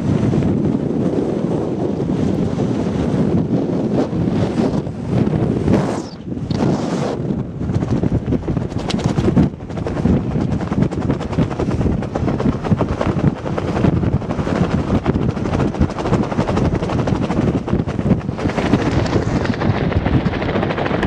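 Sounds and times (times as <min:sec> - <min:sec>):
rain cover flapping in wind: 0:00.0 - 0:21.0
wind buffeting microphone: 0:00.0 - 0:21.0.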